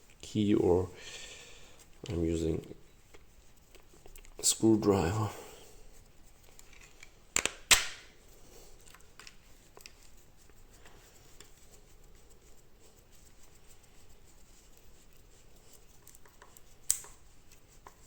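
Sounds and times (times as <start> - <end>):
screwdriver clicks and scrapes: 16.0 - 17.2.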